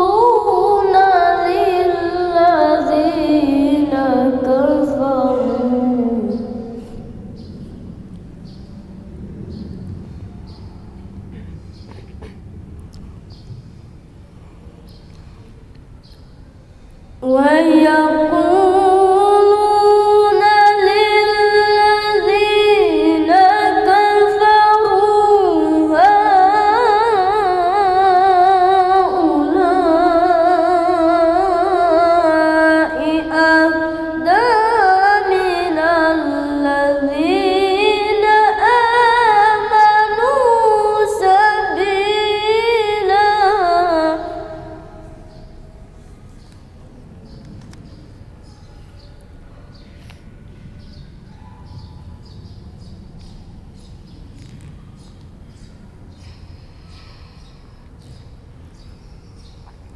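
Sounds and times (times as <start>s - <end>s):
person reciting in melodic chant: 0.0s - 7.6s, 17.2s - 45.5s.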